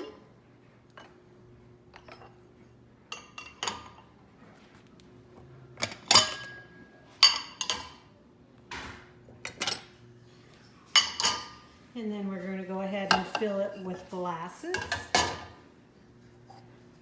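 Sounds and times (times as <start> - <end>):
dishes clinking in dishwasher rack: 3.1 - 4.1, 5.8 - 8.1, 8.7 - 9.9, 11.0 - 11.7, 13.0 - 13.8, 14.7 - 15.6.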